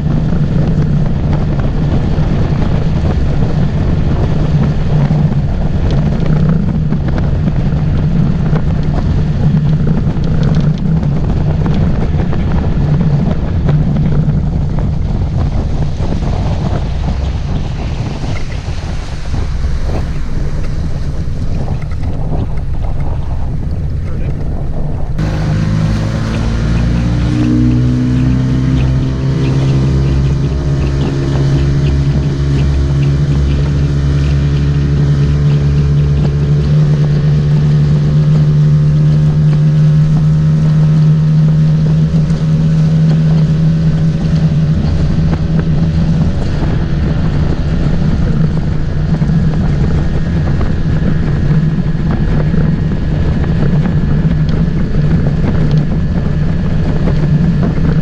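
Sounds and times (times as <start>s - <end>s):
motorboat engine: 0.0s - 58.0s
wind on microphone: 0.0s - 58.0s.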